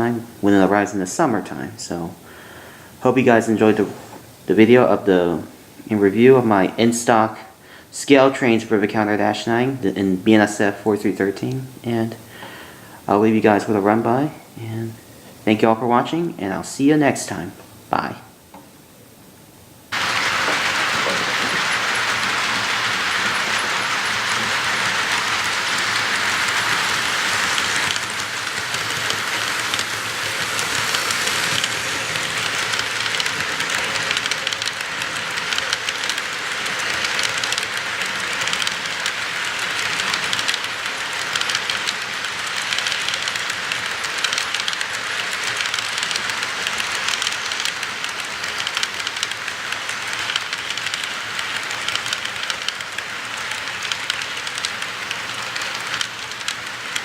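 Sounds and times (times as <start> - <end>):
model train motor and gearing: 19.9 - 57.0
wheels rolling over rails: 19.9 - 57.0.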